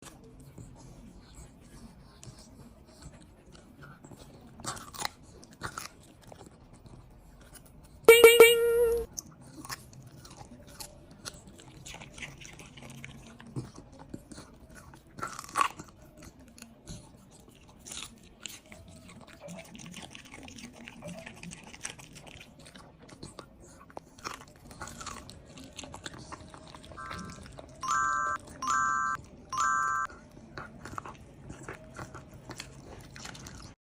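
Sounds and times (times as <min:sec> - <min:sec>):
dog chewing and crunching: 0:00.0 - 0:08.0, 0:09.1 - 0:29.5, 0:30.1 - 0:33.8
loud pitched tone: 0:08.1 - 0:09.1.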